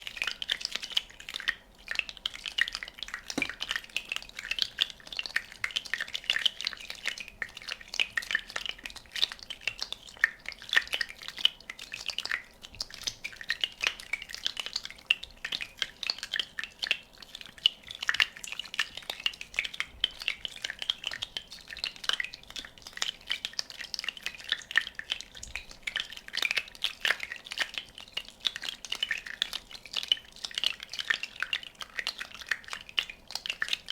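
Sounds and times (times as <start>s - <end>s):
bubbles popping: 3.3s - 3.6s
water drops: 3.3s - 3.7s.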